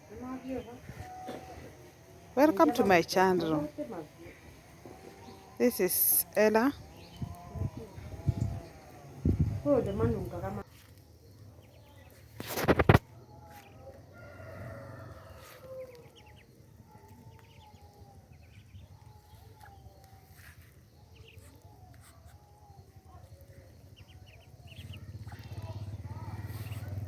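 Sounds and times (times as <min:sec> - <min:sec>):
rooster crowing: 0:13.8 - 0:16.3.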